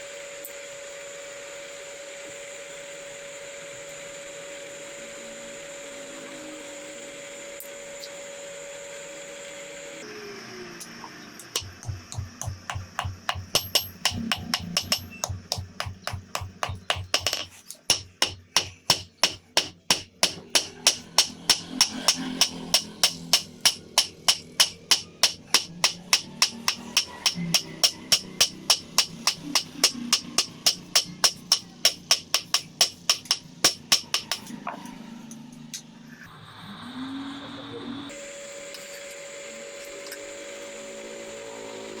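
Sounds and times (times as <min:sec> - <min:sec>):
hammer striking iron on anvil: 0:11.6 - 0:34.6.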